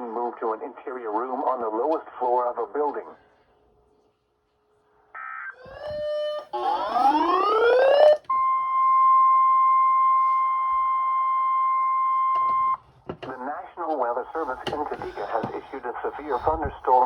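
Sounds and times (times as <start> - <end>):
electronic data tones: 5.2 - 12.8
steady warning alarm tone: 5.2 - 13.0
rising electronic sweep: 5.7 - 8.2.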